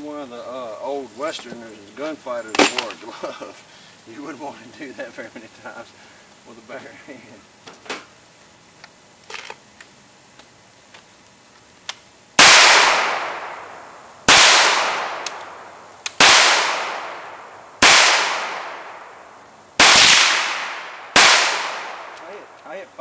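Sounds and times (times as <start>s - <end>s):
handgun shots echoing: 19.8s - 22.3s.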